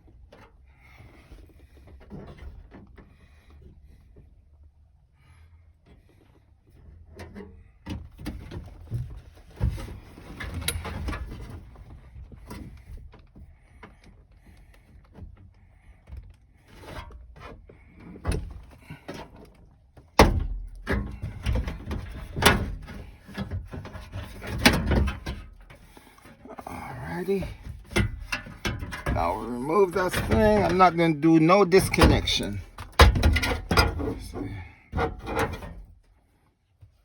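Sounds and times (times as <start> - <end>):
tools clicking and knocking on car door: 31.9 - 34.2.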